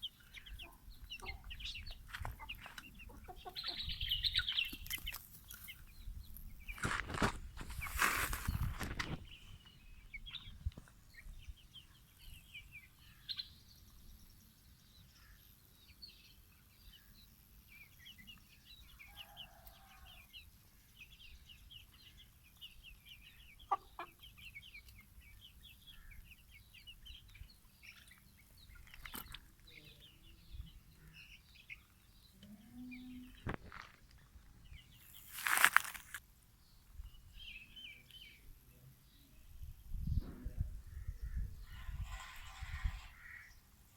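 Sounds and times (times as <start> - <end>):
chickens clucking: 0.0 - 11.5, 21.0 - 33.9.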